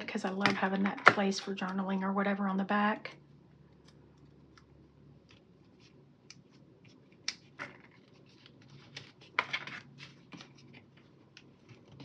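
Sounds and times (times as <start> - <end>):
paper rustling and clicks: 6.3 - 12.0.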